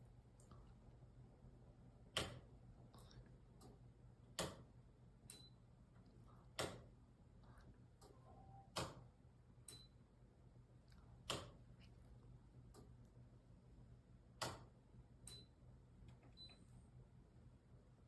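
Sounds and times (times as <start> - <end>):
ceiling fan humming: 0.0 - 18.0
ceiling fan clicking: 2.0 - 10.1, 10.7 - 13.5, 14.3 - 16.8.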